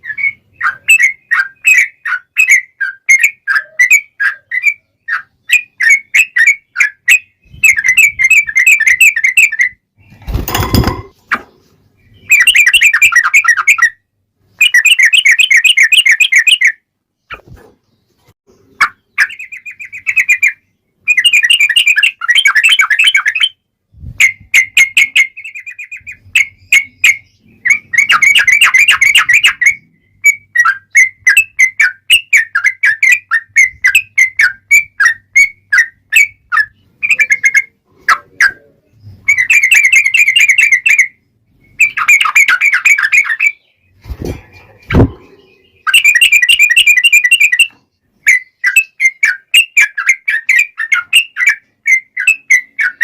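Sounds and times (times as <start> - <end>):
bird singing warbled notes: 32.4 - 53.0.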